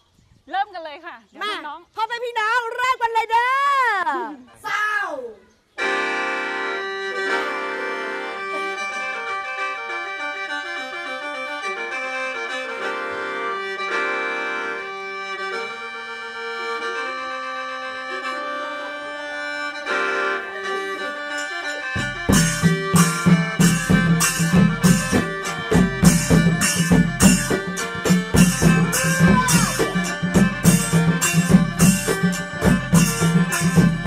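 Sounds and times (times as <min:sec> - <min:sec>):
mouth organ slow melody: 0:05.5 - 0:34.0
drums and percussion beat: 0:21.4 - 0:34.0.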